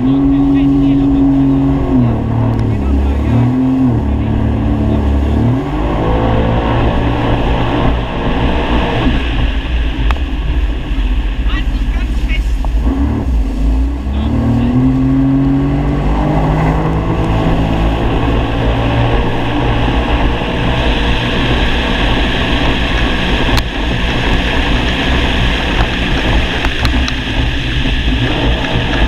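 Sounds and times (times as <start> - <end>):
jet ski engine: 0.0 - 29.0
rush of noise: 0.0 - 29.0.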